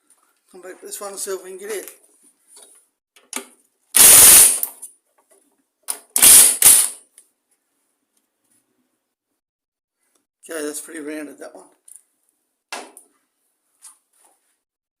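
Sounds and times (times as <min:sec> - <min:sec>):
socket tool rapid clicking: 0:05.9 - 0:07.0.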